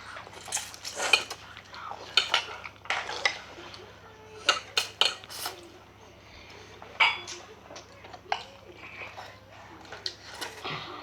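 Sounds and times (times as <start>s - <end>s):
cutlery clinking on dishes: 6.9s - 7.5s.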